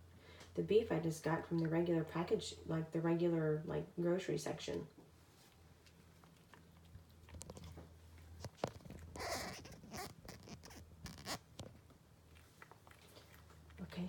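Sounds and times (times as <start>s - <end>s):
cat chewing meat: 5.6s - 14.0s.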